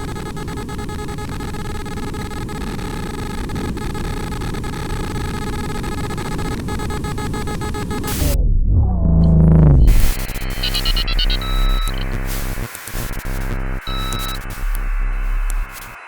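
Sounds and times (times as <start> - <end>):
faint crackle: 0.0 - 8.4, 9.9 - 16.0
electronic noise drone: 0.0 - 16.0
rough low rumble: 8.1 - 16.0
steady high tones: 9.9 - 16.0.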